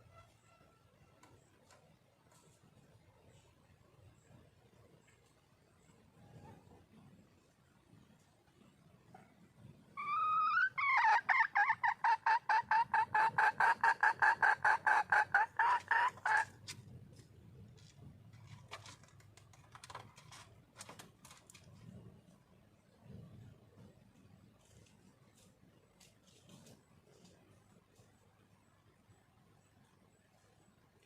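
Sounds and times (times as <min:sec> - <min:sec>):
hen calling: 0:10.0 - 0:16.6.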